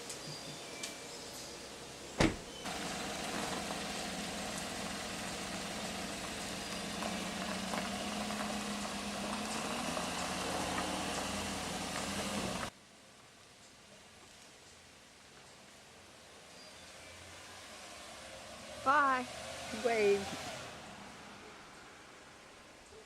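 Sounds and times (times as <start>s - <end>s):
vehicle engine humming: 0.0s - 12.7s, 17.5s - 22.8s.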